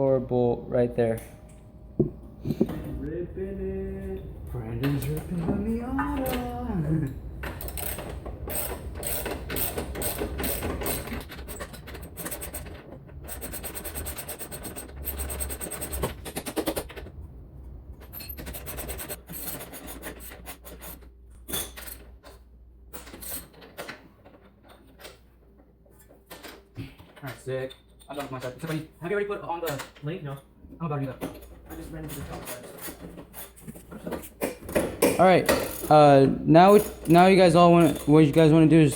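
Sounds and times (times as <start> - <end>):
metal knocks: 2.0 - 3.0.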